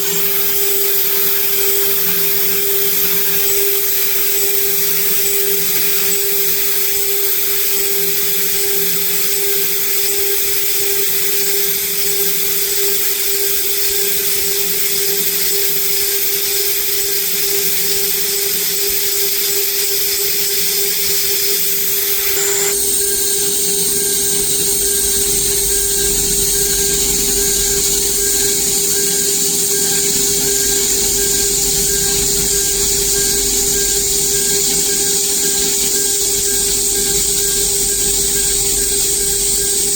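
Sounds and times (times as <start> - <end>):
router spindle whining: 21.6 - 39.9
low rumble: 24.2 - 28.7.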